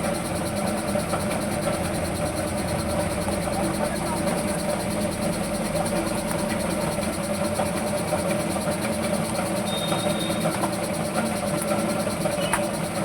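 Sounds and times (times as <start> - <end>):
engine humming: 1.5 - 7.7.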